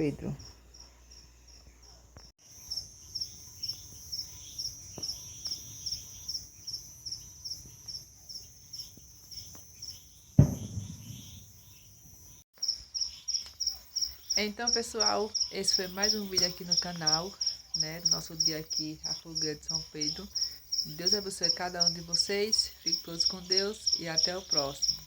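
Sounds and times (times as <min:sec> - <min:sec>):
crickets chirping: 0:00.0 - 0:25.0
loud thump: 0:10.4 - 0:11.6.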